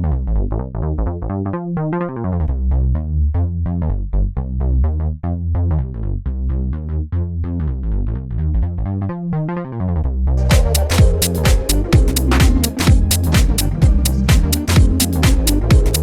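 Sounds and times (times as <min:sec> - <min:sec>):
synth bass loop: 0:10.3 - 0:16.0.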